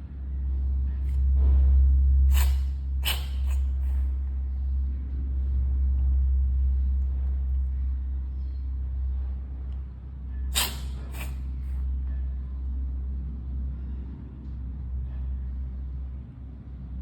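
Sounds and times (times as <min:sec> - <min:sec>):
cat sneezing: 0:02.3 - 0:04.1, 0:10.4 - 0:11.8.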